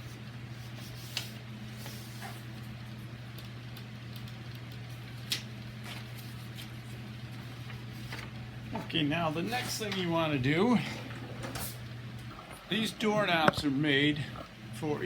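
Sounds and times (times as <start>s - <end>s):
steady low hum: 0.0s - 15.0s
paper rustling: 3.3s - 10.1s.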